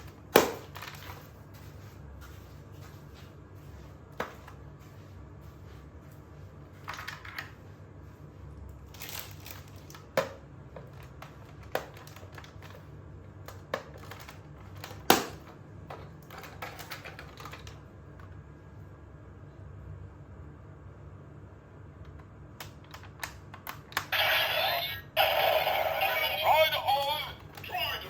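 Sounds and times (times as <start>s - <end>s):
plastic toy clicking and rustling: 13.5s - 15.4s, 16.2s - 17.8s.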